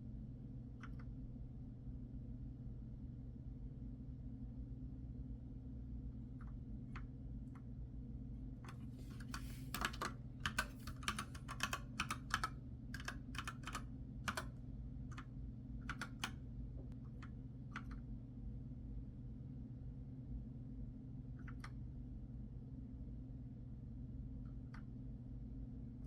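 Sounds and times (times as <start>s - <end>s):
steady low hum: 0.0s - 26.0s
computer keyboard typing: 8.7s - 14.5s, 15.1s - 16.4s, 17.8s - 18.0s.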